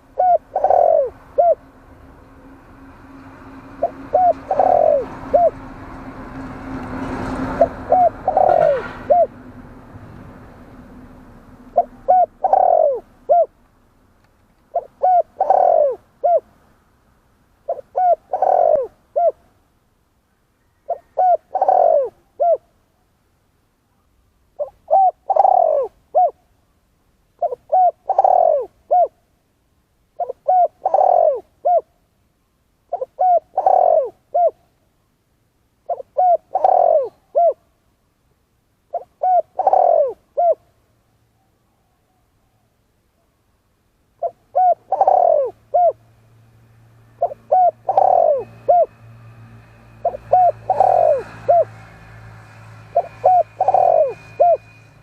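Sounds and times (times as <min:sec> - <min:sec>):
dove cooing: 0:00.0 - 0:01.7, 0:03.7 - 0:05.7, 0:07.4 - 0:09.4, 0:11.7 - 0:13.6, 0:14.7 - 0:16.5, 0:17.6 - 0:19.4, 0:20.6 - 0:22.7, 0:24.6 - 0:26.4, 0:27.4 - 0:29.2, 0:30.2 - 0:31.9, 0:32.9 - 0:34.6, 0:35.9 - 0:37.7, 0:38.9 - 0:40.7, 0:44.2 - 0:46.0, 0:47.2 - 0:49.0, 0:49.9 - 0:51.9, 0:52.8 - 0:54.8.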